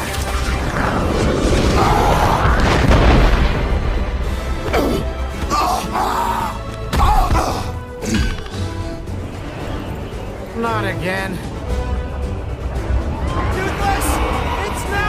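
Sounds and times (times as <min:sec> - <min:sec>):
orchestral film music: 0:00.0 - 0:15.0
deep rumbling: 0:00.1 - 0:05.6, 0:07.8 - 0:15.0
booming action effects: 0:00.4 - 0:04.6
heavy blast: 0:00.6 - 0:04.6.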